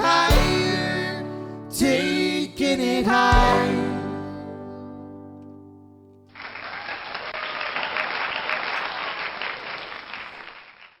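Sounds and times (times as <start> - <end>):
song's final chord: 0.0 - 2.4, 3.1 - 5.6
audience applause: 6.4 - 11.0.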